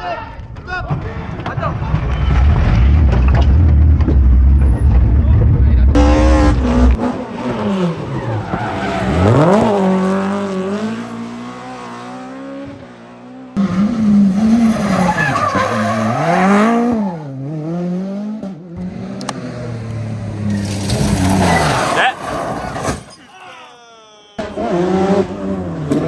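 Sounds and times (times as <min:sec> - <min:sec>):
rally car engine revving: 0:00.9 - 0:23.1, 0:24.4 - 0:26.0
tyre noise on tarmac: 0:19.8 - 0:23.8.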